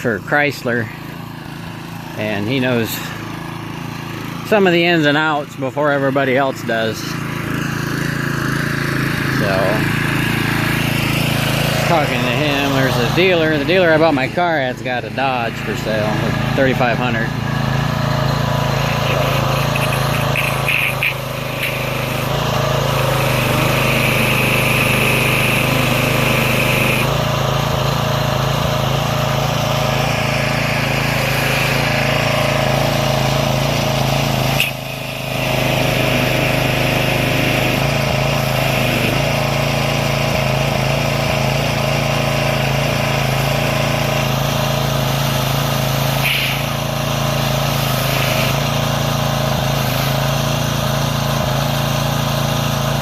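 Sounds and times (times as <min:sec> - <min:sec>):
pressure washer engine running: 0:00.0 - 0:53.0.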